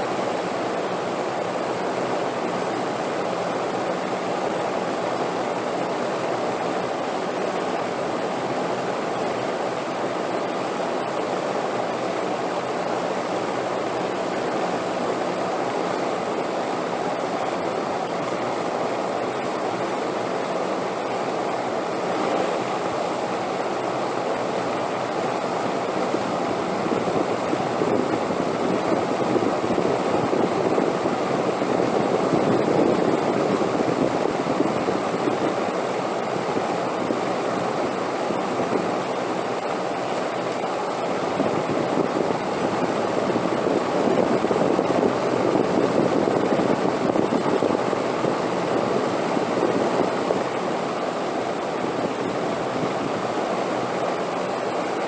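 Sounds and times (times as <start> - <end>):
wind blowing in gusts: 25.8 - 39.1, 40.9 - 53.7.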